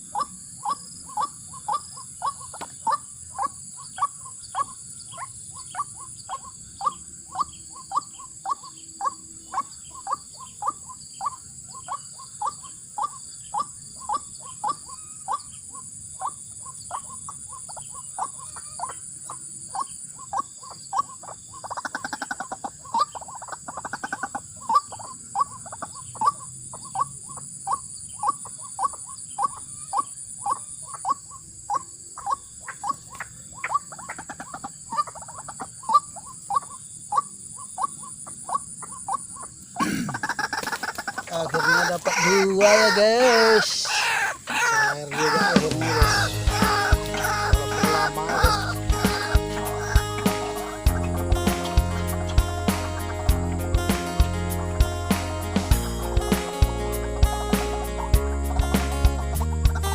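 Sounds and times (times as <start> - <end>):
waterhen calling: 40.2 - 59.9
steady high hiss: 40.7 - 59.9.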